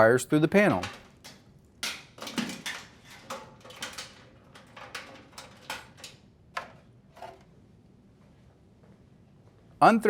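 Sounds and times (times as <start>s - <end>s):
wire and panel clicks and rustles: 0.7s - 7.5s.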